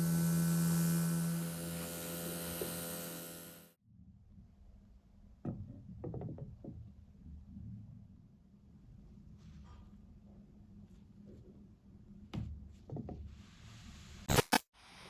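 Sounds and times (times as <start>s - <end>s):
electric motor hum with hiss: 0.0s - 3.8s.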